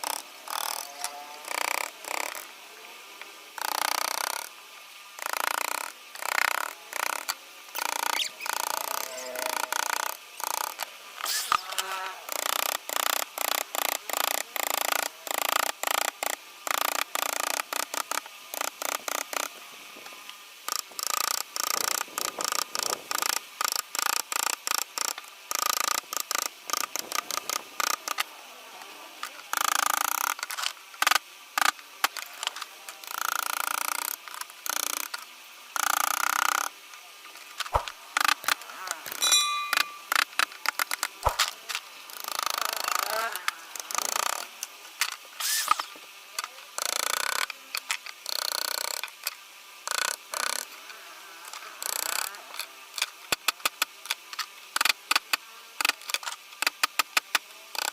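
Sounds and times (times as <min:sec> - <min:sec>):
carving tool cutting wood: 0:00.0 - 0:02.4, 0:03.6 - 0:04.5, 0:05.2 - 0:11.6, 0:12.3 - 0:19.5, 0:20.7 - 0:28.2, 0:29.5 - 0:35.2, 0:35.8 - 0:36.7, 0:37.6 - 0:39.2, 0:39.8 - 0:41.5, 0:42.2 - 0:43.2, 0:43.8 - 0:45.9, 0:46.8 - 0:49.1, 0:49.9 - 0:50.7.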